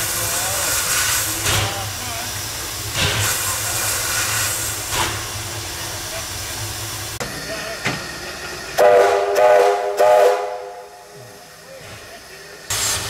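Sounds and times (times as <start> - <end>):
steam locomotive hissing: 0.0 - 13.0
heavy exhaust beat: 6.8 - 11.4.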